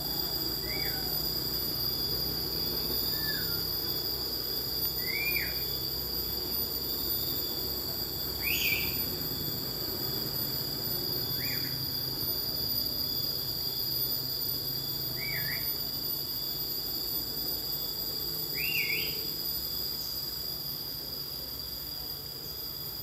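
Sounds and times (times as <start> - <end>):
high-pitched insect chorus: 0.0 - 23.0
bird warbling calls: 8.4 - 9.0.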